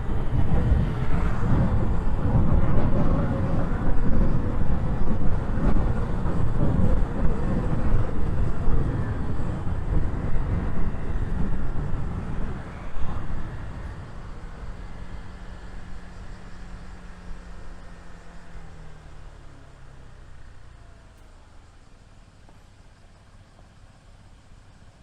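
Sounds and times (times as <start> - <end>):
wind buffeting microphone: 0.0 - 17.3.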